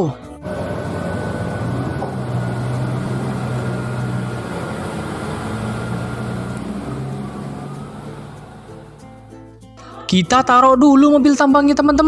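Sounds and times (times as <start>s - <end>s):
high whine: 0.4s - 9.4s
truck engine running: 0.4s - 9.6s.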